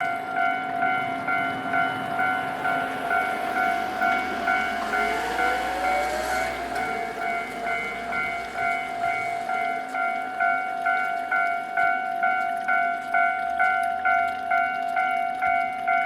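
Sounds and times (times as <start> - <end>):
train rumble and whine: 0.0 - 11.9
level crossing bell clanging: 0.0 - 16.0.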